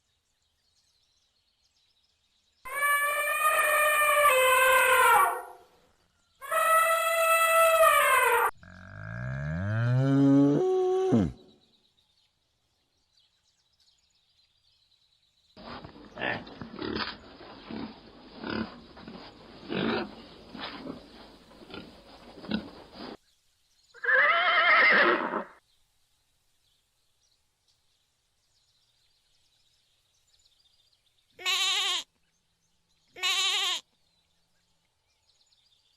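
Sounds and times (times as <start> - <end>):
farm animal pitched calls: 2.7 - 5.6, 6.4 - 9.1, 31.4 - 32.0, 33.2 - 33.8
farm animal low grunts: 15.6 - 23.2.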